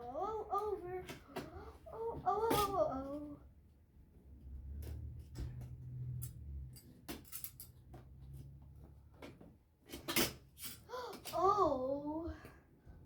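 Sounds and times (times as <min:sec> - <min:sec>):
clicks and knocks of loose parts: 0:04.8 - 0:11.4.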